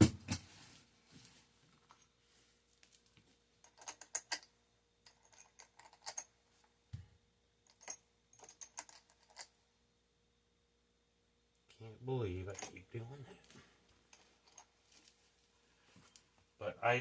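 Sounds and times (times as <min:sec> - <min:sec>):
small hard parts clinking: 0:03.6 - 0:06.4, 0:07.6 - 0:09.6, 0:12.5 - 0:13.0, 0:14.0 - 0:15.1.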